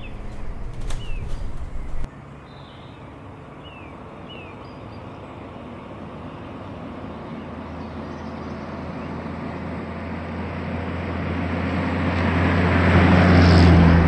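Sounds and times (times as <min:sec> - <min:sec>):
road noise: 0:00.0 - 0:02.1, 0:12.8 - 0:14.0
vehicle engine hum: 0:00.0 - 0:02.1, 0:13.0 - 0:14.0.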